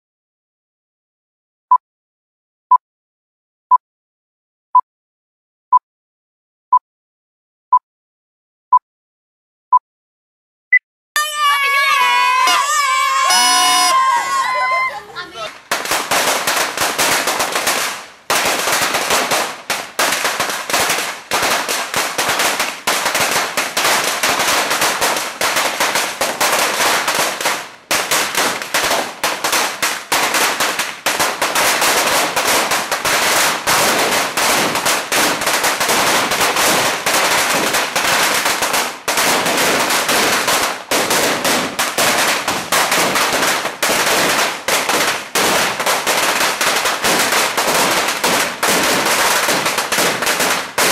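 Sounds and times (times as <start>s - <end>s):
firecrackers rattling: 11.8s - 50.9s.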